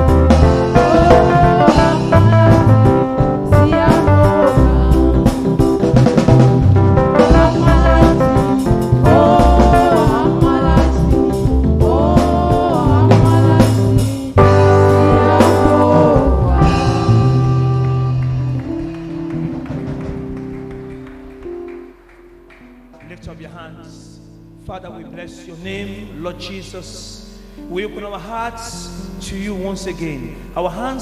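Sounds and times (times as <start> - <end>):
gospel song with band: 0.0 - 22.0.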